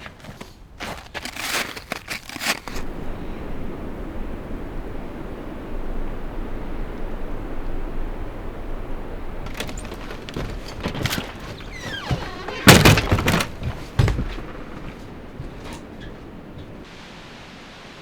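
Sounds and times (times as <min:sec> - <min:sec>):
wind noise: 0:02.7 - 0:16.9
knocks and clunks: 0:09.4 - 0:16.8
heavy thud: 0:09.5 - 0:16.8
short squeak: 0:09.5 - 0:16.8.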